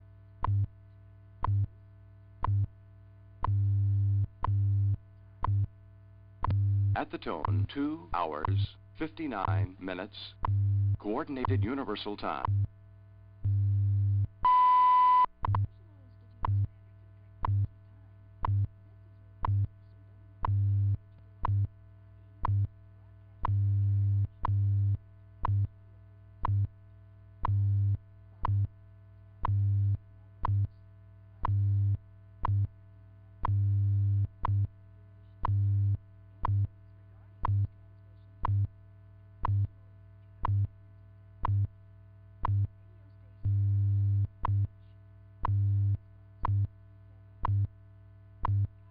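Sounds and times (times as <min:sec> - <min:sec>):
faint steady hum: 0:00.0 - 0:48.9
time signal tone: 0:14.4 - 0:15.3.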